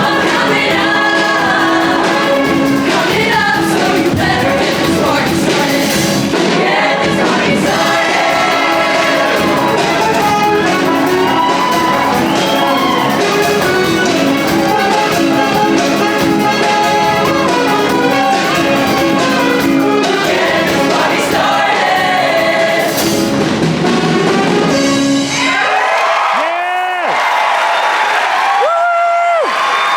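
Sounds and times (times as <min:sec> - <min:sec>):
choir singing: 0:00.0 - 0:23.5
live band with brass: 0:00.0 - 0:25.6.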